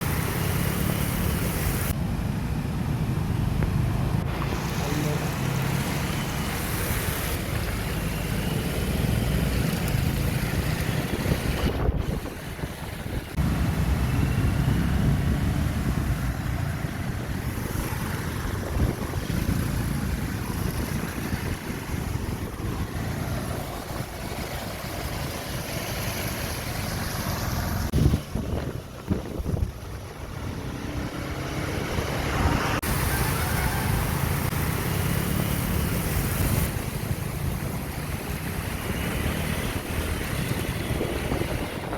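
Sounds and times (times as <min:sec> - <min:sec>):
floodwater rushing: 0:00.0 - 0:41.9
wind buffeting microphone: 0:09.3 - 0:25.7, 0:27.9 - 0:34.6, 0:36.0 - 0:41.9.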